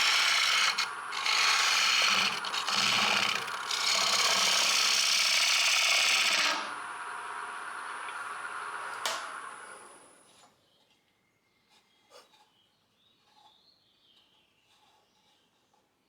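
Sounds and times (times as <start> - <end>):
tool rasping on spinning wood: 0.0 - 6.8
wood lathe running: 0.0 - 9.8.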